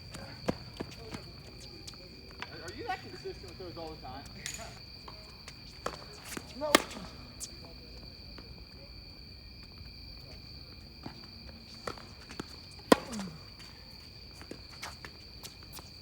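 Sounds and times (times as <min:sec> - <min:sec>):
tennis ball bouncing: 0:05.8 - 0:07.5, 0:11.8 - 0:13.7
tennis ball hit by racket: 0:05.8 - 0:07.5, 0:11.9 - 0:13.4.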